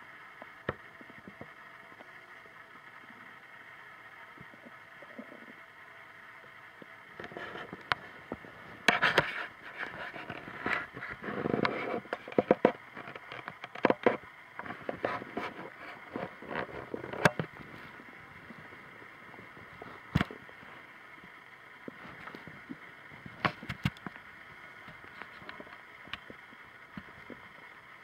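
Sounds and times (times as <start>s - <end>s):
stomach gurgling: 4.3s - 5.7s, 6.8s - 27.8s.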